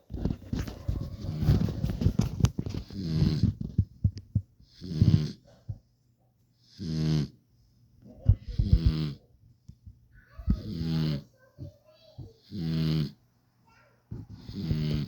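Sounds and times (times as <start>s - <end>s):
crackling and rustling: 0.0s - 5.8s
puppy snoring: 0.2s - 5.8s, 6.6s - 7.4s, 8.0s - 9.3s, 10.5s - 11.4s, 12.4s - 13.2s, 14.2s - 15.0s.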